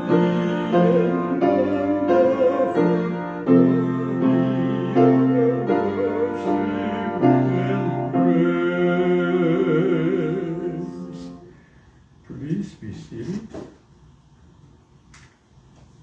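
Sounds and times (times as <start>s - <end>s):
people singing: 0.0s - 11.5s
piano playing a slow hymn: 0.0s - 11.6s.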